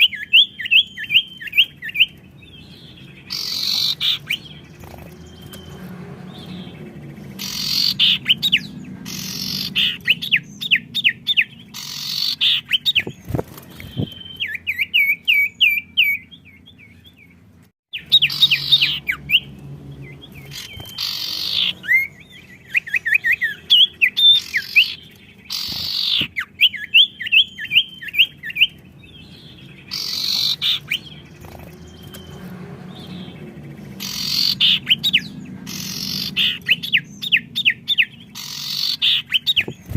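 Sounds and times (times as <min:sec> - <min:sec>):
bird trills: 0:00.0 - 0:39.9
songbirds chattering: 0:00.0 - 0:39.9.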